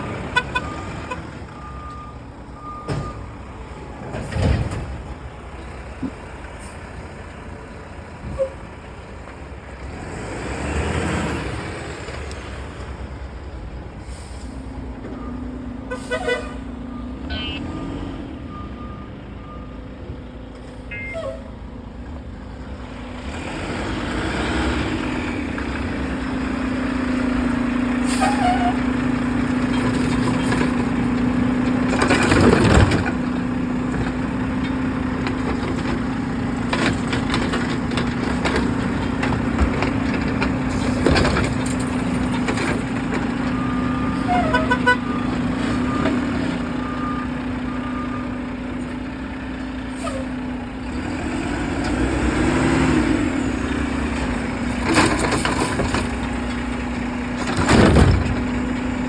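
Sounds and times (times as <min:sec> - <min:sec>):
garbage truck engine humming: 0:10.8 - 0:59.0
short electronic beeps: 0:17.0 - 0:19.7, 0:20.9 - 0:21.4.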